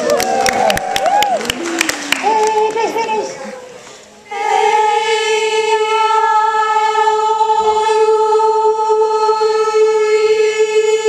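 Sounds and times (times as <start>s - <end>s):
choir singing a held note: 4.2s - 11.0s.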